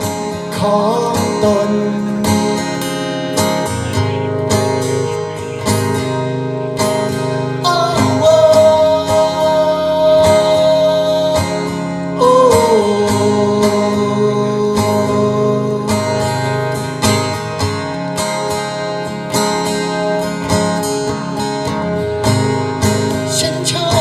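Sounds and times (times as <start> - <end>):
strummed acoustic guitar: 0.0 - 24.0.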